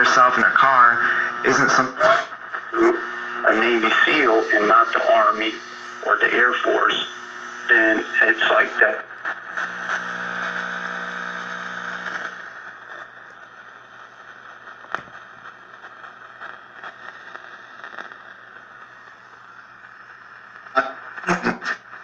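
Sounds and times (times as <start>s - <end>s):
radio static hiss: 0.0s - 22.0s
sharp crackle: 7.0s - 22.0s.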